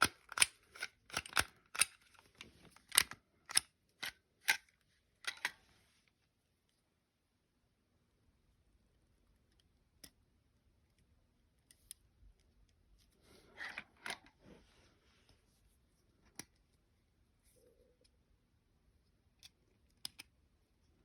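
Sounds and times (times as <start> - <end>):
metallic clicks of pistol parts: 0.0 - 5.6, 19.4 - 20.4
clicking and scraping: 0.0 - 5.7, 11.6 - 14.4.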